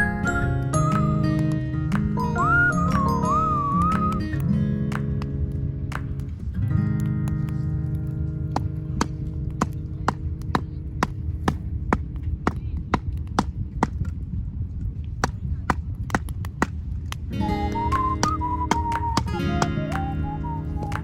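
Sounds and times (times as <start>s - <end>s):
held low notes: 0.0s - 13.8s, 17.3s - 21.0s
clicking beat: 17.4s - 21.0s.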